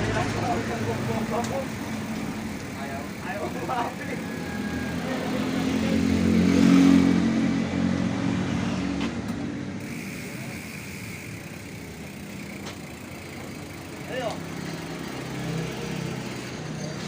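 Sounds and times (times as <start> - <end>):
vehicle engine passing by: 3.3 - 11.4.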